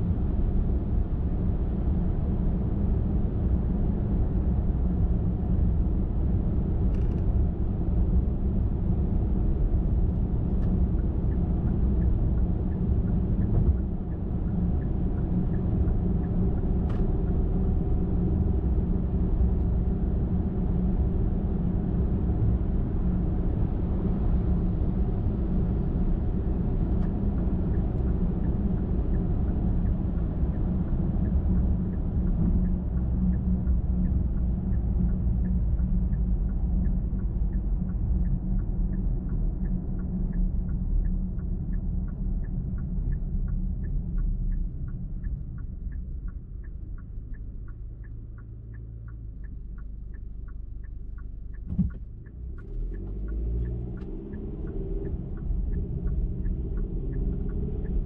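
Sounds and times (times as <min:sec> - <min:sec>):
car engine and tyre rumble: 0:00.0 - 0:58.0
faint ticks: 0:26.9 - 0:58.0.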